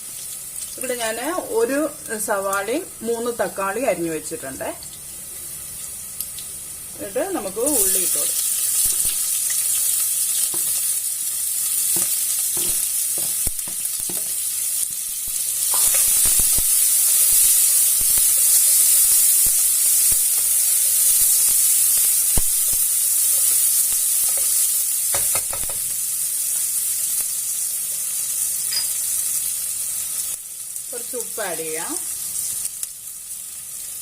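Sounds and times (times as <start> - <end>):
onion frying in hot oil: 0.0 - 34.0
spoon stirring and scraping pan: 8.8 - 11.0, 11.7 - 19.4
spoon knocking against pan: 25.1 - 25.8.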